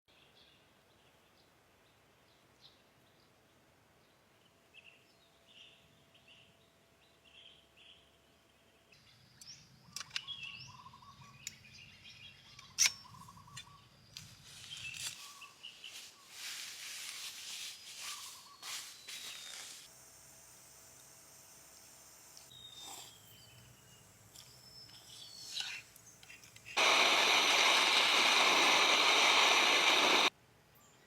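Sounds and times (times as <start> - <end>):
bird chirps: 4.8 - 16.4, 22.5 - 27.2
broad hissing noise: 16.0 - 30.4.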